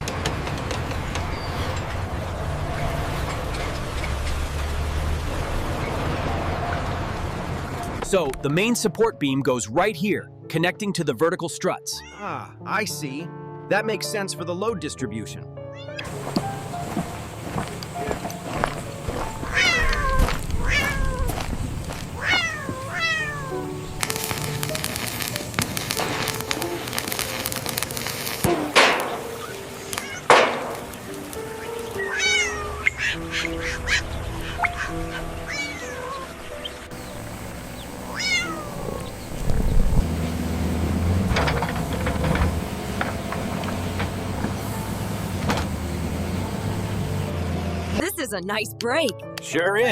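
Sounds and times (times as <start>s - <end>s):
cat meows: 12.0s - 12.3s, 15.7s - 16.1s, 19.4s - 21.5s, 22.2s - 23.7s, 29.4s - 30.3s, 32.0s - 36.3s, 38.1s - 39.1s
steady hiss with rapid clicks: 24.0s - 30.1s
low mechanical hum: 36.9s - 47.9s
light knocks and clicks: 41.0s - 46.1s.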